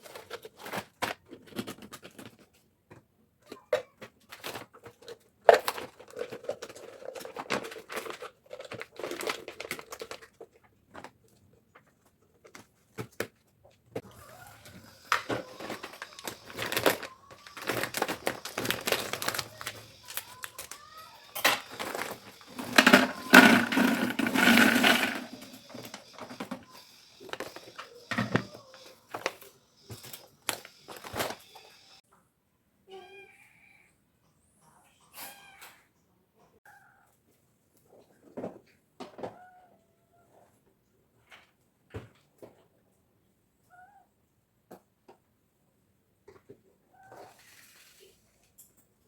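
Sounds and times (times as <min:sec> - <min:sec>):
packaging crinkling and rustling: 0:04.3 - 0:13.3, 0:15.0 - 0:26.6.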